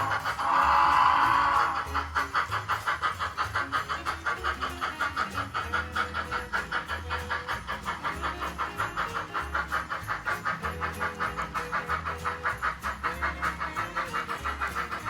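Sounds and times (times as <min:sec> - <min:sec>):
background music: 0:00.0 - 0:15.0
model train clicking: 0:00.0 - 0:15.0.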